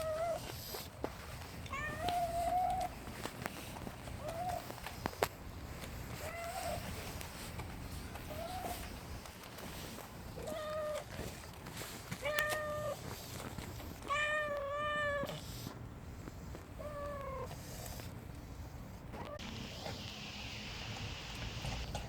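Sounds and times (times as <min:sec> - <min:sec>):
cat meowing: 0:01.7 - 0:02.9, 0:14.0 - 0:15.4.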